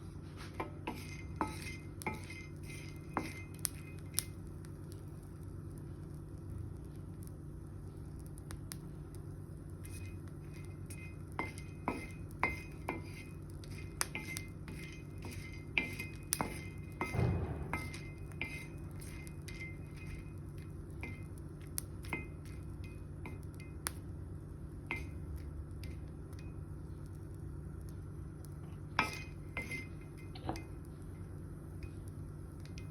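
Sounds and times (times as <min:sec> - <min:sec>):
steady low hum: 0:00.0 - 0:32.9
utensil scrape: 0:00.2 - 0:04.0, 0:09.8 - 0:20.3.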